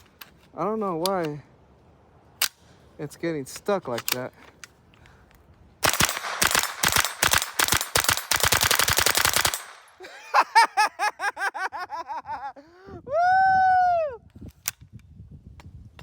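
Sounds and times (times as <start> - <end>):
rapid rifle gunshots: 5.8 - 9.9.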